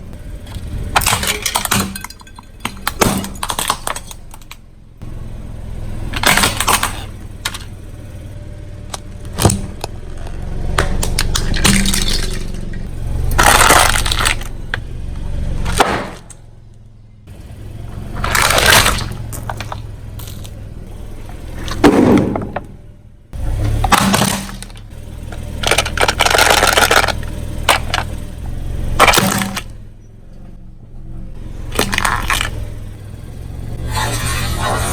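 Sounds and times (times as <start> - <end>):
car engine humming: 0.0 - 34.9
tyre crushing brittle objects: 0.6 - 4.6, 13.4 - 14.6, 18.2 - 20.5, 23.4 - 28.1, 29.0 - 29.8, 31.7 - 32.7.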